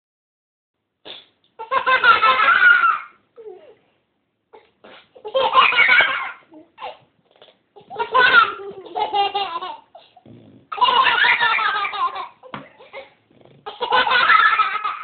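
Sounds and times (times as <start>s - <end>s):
young girls laughing: 1.7s - 3.2s, 7.8s - 9.9s, 10.8s - 15.0s.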